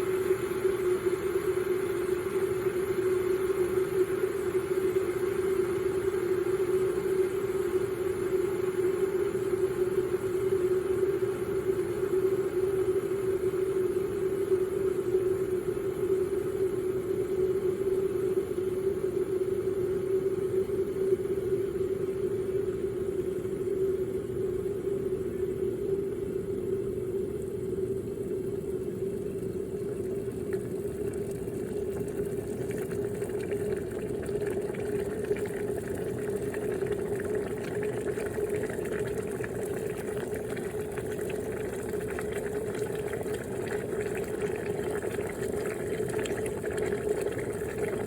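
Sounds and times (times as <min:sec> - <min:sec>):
water boiling and bubbling: 0:00.0 - 0:16.1, 0:27.1 - 0:48.0.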